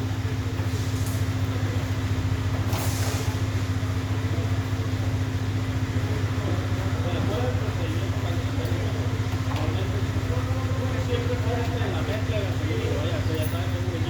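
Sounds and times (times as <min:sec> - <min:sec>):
small engine idling: 0:00.0 - 0:14.0
brief hiss: 0:02.7 - 0:03.5.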